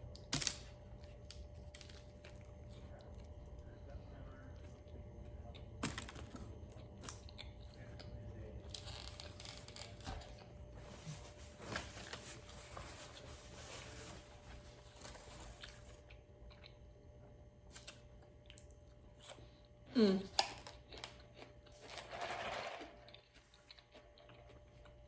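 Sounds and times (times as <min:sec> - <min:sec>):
chewing and biting food: 0:01.1 - 0:10.6, 0:15.2 - 0:17.0, 0:17.7 - 0:22.0, 0:22.8 - 0:25.0
paper wrapping crinkling: 0:08.7 - 0:16.0.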